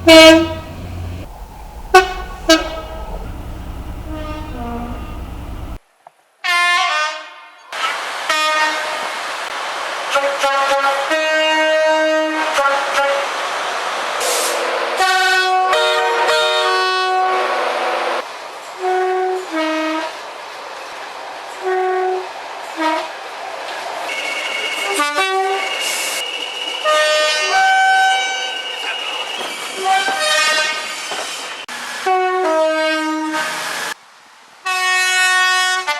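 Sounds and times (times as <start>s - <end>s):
steady high tone: 0.0s - 5.8s
train horn blasts: 0.0s - 5.8s, 6.4s - 7.6s, 8.3s - 9.1s, 10.1s - 13.3s, 15.0s - 17.7s, 18.8s - 20.2s, 26.8s - 28.6s, 29.8s - 31.0s, 32.0s - 33.8s, 34.7s - 35.9s.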